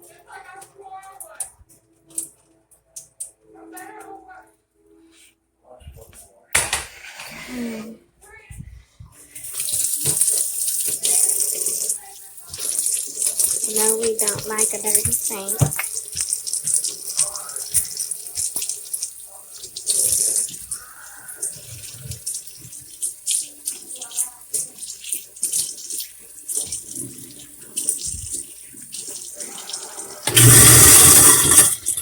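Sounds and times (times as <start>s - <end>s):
faucet running: 9.3s - 32.0s
knocks and clinks at sink: 13.9s - 16.3s.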